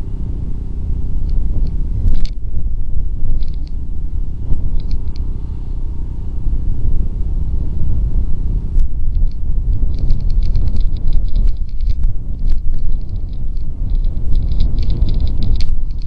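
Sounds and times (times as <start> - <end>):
wind buffeting microphone: 0.0 - 16.0
faint ticks: 1.2 - 2.4, 4.5 - 5.3.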